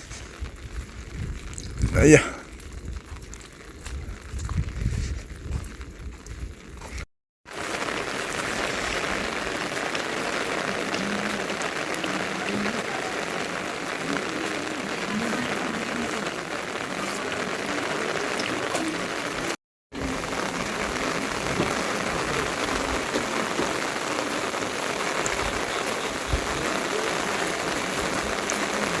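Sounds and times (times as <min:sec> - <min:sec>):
steady rain falling: 0:00.0 - 0:29.0.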